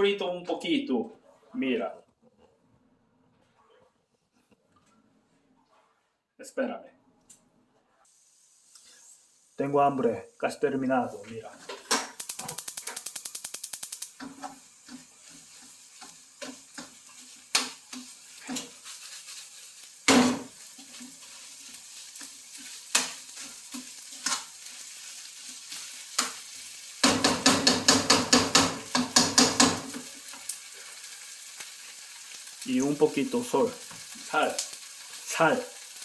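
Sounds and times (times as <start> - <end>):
food sizzling: 7.8 - 36.0
utensil scraping a pan: 14.2 - 26.4.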